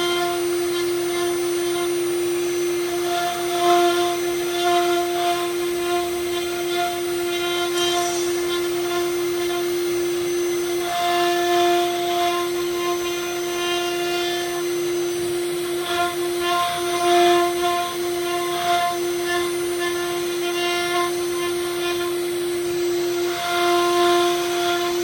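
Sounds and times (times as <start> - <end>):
router spindle whine: 0.0 - 25.0
cutting noise: 2.8 - 13.2.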